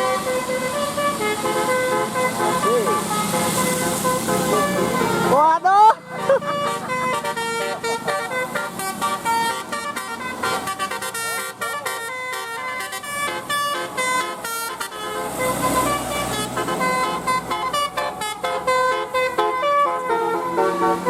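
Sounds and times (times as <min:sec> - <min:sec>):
bus musical horn tune: 0:00.0 - 0:21.0.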